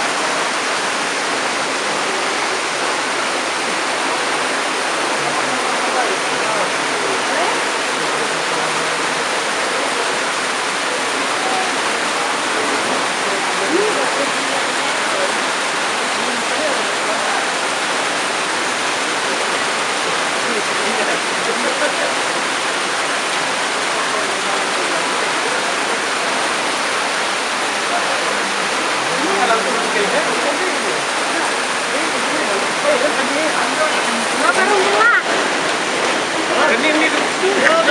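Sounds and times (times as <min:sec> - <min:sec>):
floodwater rushing: 0:00.0 - 0:37.9.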